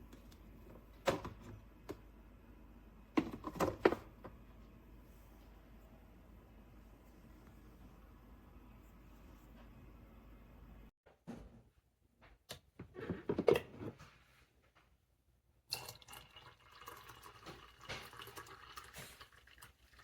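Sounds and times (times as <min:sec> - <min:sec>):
coffee dripping and splashing: 0:15.7 - 0:20.0.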